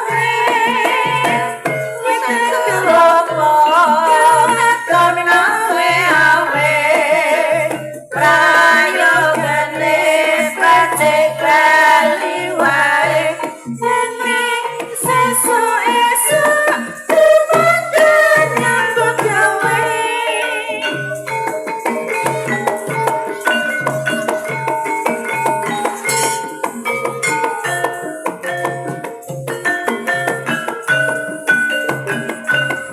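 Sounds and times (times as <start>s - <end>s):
person singing: 0.0s - 21.2s, 21.8s - 24.7s
metallophone notes: 0.0s - 32.9s.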